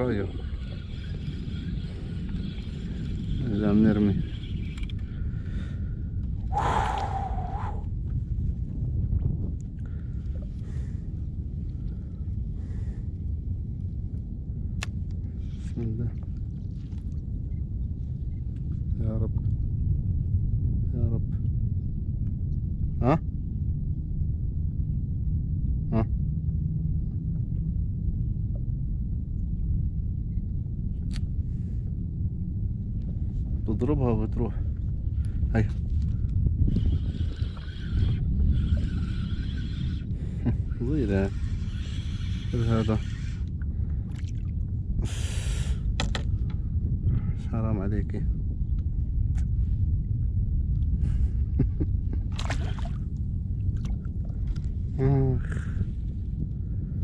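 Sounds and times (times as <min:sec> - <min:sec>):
water lapping against a hull: 0:00.0 - 0:13.4, 0:34.7 - 0:47.3, 0:52.1 - 0:56.4
wind buffeting microphone: 0:00.0 - 0:57.0
short water splashes: 0:52.3 - 0:53.0.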